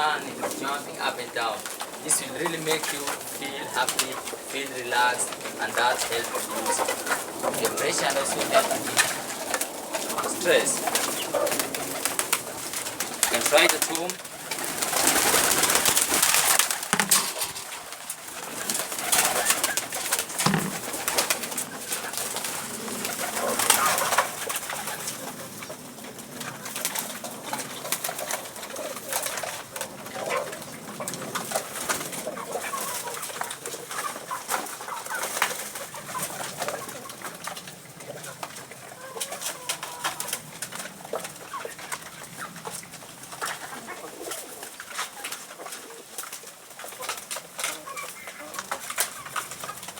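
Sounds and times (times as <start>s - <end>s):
pigeons cooing: 0.0s - 49.9s
clicks and flutters: 8.4s - 29.6s.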